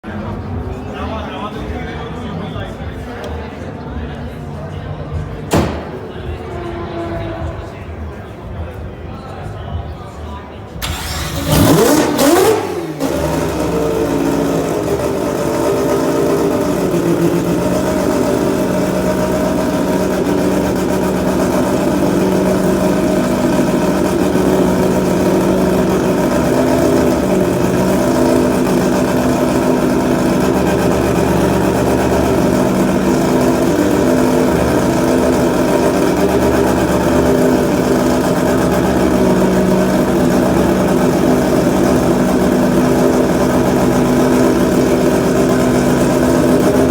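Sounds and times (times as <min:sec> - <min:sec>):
rotary engine idling: 0:10.8 - 0:46.9.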